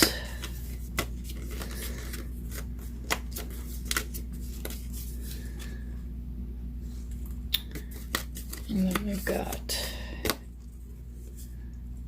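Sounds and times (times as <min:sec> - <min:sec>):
steady low hum: 0:00.0 - 0:12.0
paper rustling: 0:00.4 - 0:05.8.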